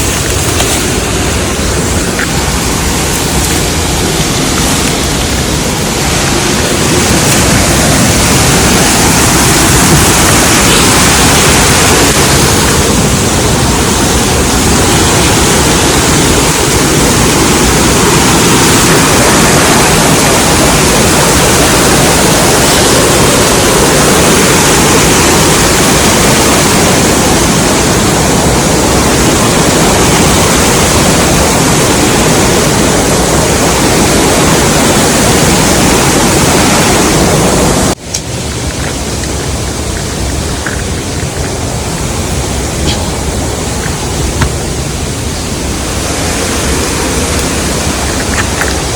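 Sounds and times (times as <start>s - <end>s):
waterfall rushing: 0.0s - 48.9s.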